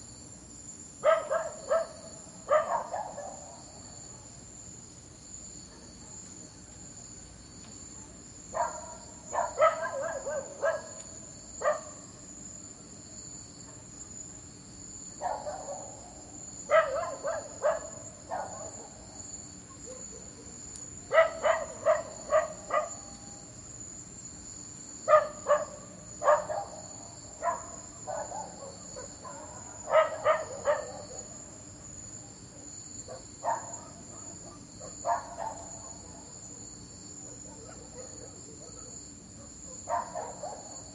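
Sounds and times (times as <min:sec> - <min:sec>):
crickets chirring: 0:00.0 - 0:40.9
dog barking: 0:01.0 - 0:03.6, 0:05.6 - 0:06.3, 0:07.9 - 0:11.0, 0:11.6 - 0:12.0, 0:15.2 - 0:19.1, 0:19.7 - 0:23.3, 0:25.1 - 0:31.4, 0:33.1 - 0:36.6, 0:37.2 - 0:40.9.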